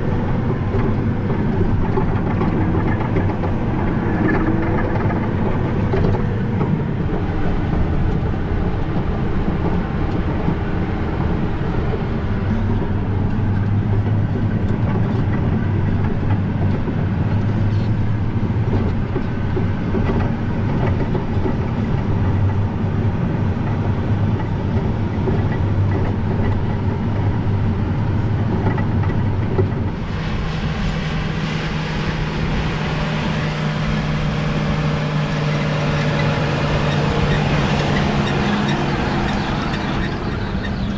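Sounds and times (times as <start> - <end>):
harvest machinery diesel drone: 0.0 - 40.9
machinery rattling clatter: 0.0 - 40.9.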